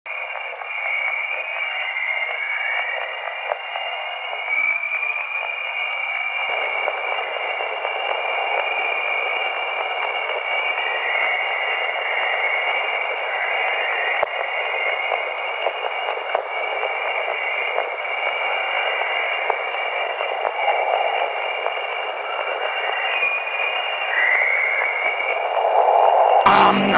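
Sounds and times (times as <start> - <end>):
thin whistling tones: 0.5 - 6.7
radio static hiss: 20.4 - 26.9
wavering tone: 26.5 - 26.9.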